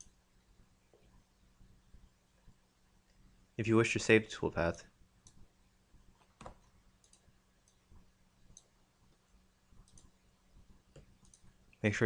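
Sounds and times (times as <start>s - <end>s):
faint steady hum: 0.0s - 12.0s
computer mouse clicks: 6.2s - 7.8s, 8.5s - 8.8s, 9.8s - 10.2s, 10.9s - 11.5s.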